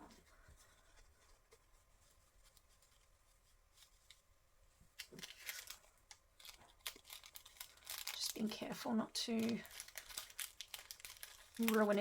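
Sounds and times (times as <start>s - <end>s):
paper and card rustling: 4.9s - 12.0s.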